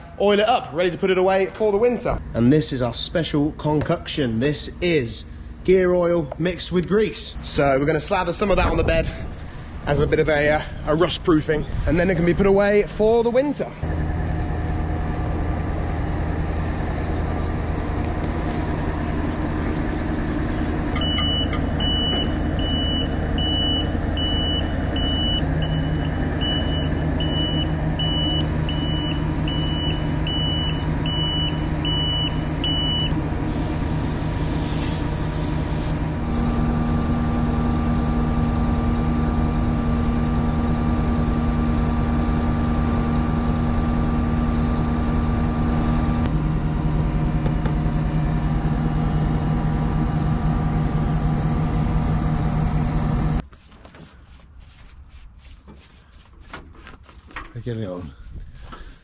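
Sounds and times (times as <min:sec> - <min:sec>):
diesel engine running: 0:00.0 - 0:53.4
reversing alarm beeping: 0:21.0 - 0:34.1
short hiss: 0:33.5 - 0:36.0.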